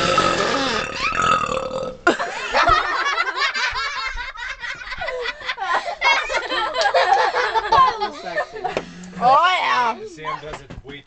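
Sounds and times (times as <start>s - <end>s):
people laughing and giggling: 2.1s - 9.0s.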